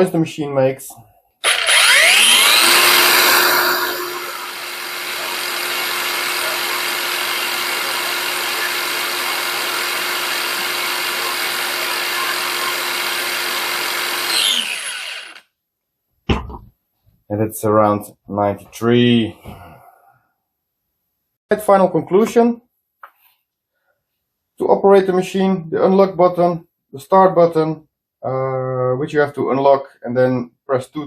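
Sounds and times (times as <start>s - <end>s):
angle grinder whining: 1.4s - 15.5s.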